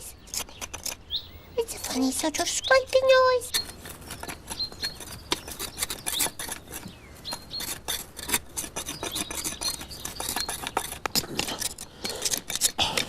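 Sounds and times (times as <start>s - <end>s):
scraping rasping strokes: 3.4s - 13.0s.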